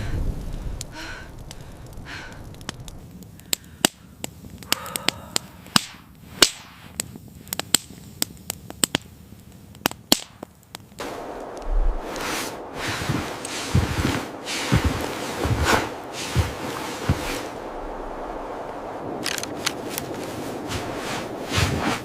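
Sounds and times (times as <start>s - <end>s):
sharp snaps and clicks: 0.5s - 9.1s, 9.8s - 11.7s, 19.2s - 20.2s
loud rush of noise: 11.0s - 21.3s.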